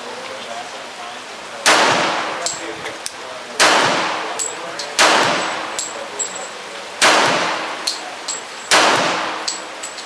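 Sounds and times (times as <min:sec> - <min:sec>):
pistol shots with echo: 0:01.6 - 0:02.6, 0:03.6 - 0:06.0, 0:07.0 - 0:08.0, 0:08.7 - 0:09.8.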